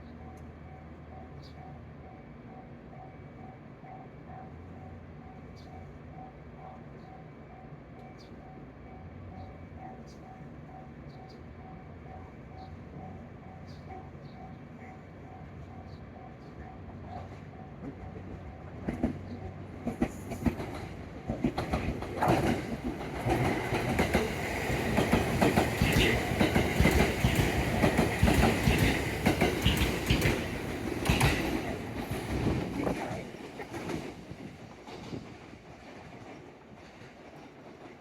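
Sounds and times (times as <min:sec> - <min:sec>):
train wheels clattering over joints: 0:18.8 - 0:38.0.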